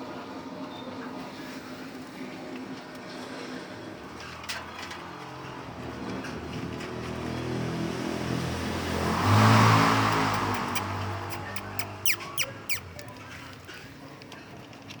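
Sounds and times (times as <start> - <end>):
vehicle passing by: 4.0 - 13.5.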